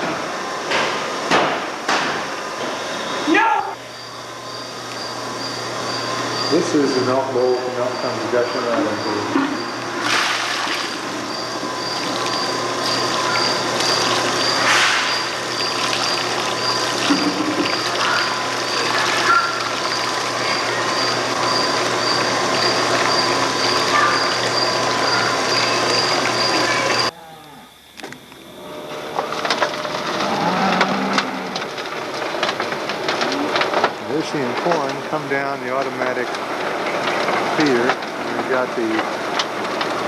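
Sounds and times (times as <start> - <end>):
milking machine pulsing: 4.9 - 40.0
cow mooing: 30.1 - 31.6.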